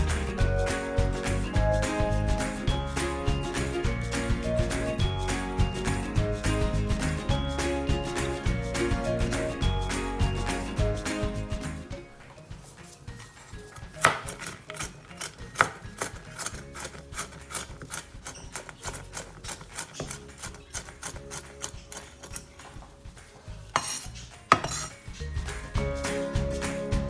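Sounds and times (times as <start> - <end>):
soft background music: 0.0 - 27.0
utensil clinking and scraping bowl: 12.8 - 25.8.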